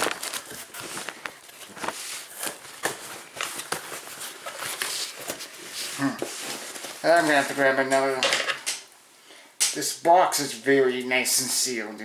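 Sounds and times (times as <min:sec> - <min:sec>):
hands opening cardboard box: 0:00.0 - 0:07.6.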